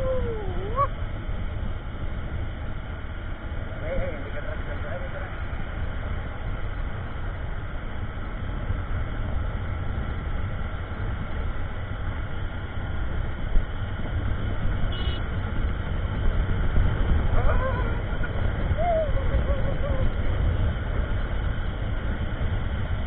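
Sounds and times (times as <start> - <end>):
motorcycle engine drone: 0.0 - 23.0
wind on microphone: 7.9 - 23.0.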